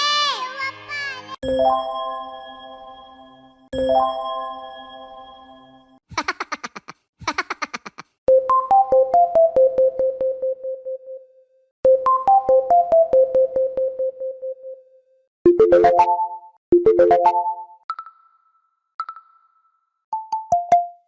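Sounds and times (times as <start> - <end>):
rising arpeggio chime: 1.4 - 6.0.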